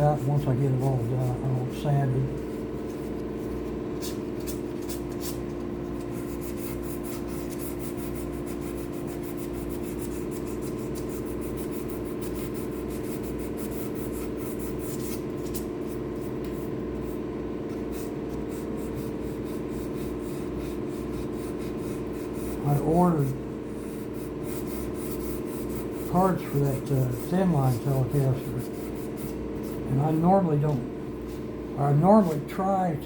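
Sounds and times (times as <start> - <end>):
steady hum: 0.0 - 33.0
sandpaper scratching on epoxy: 6.2 - 15.7, 24.0 - 30.3.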